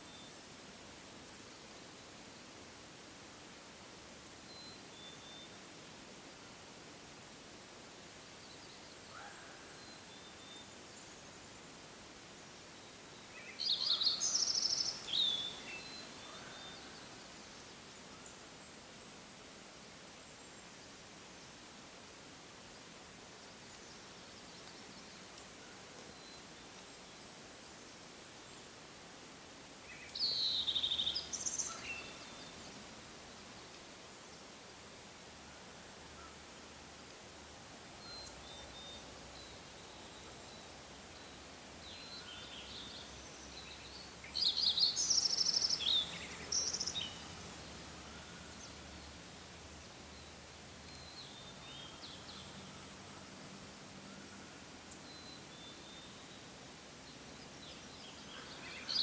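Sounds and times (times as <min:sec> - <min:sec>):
forest ambience hiss: 0:00.0 - 0:59.0
songbirds singing: 0:12.6 - 0:18.8, 0:29.8 - 0:34.6, 0:37.4 - 0:59.0.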